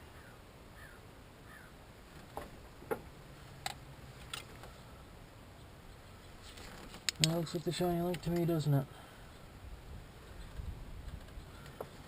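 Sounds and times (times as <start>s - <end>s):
faint sharp clicks: 7.0s - 7.4s.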